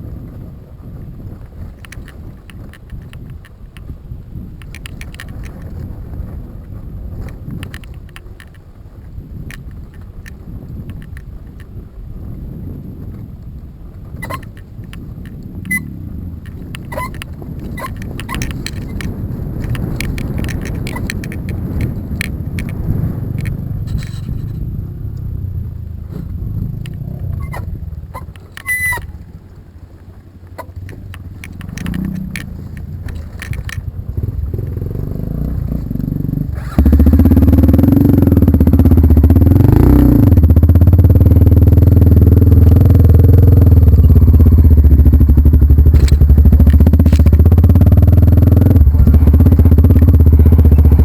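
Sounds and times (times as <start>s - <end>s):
vehicle driving on rough trail: 0.0s - 51.0s
knocks and rattles: 16.4s - 24.6s, 30.5s - 35.1s
loud engine rising and falling: 34.1s - 51.0s.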